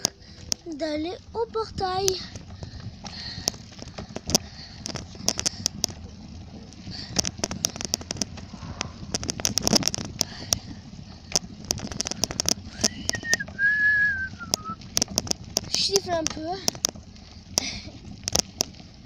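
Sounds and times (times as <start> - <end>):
bicycle tyres rumbling: 0.0 - 19.0
sharp clicks and crackles: 0.0 - 19.0
person whistling: 12.9 - 14.8.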